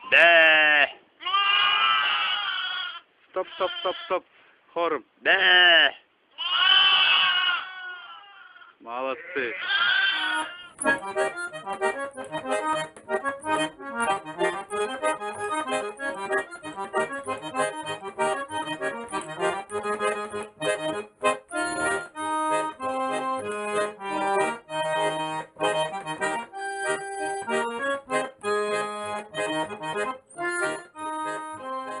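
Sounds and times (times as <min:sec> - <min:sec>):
accordion playing lively melody: 0:10.1 - 0:32.0.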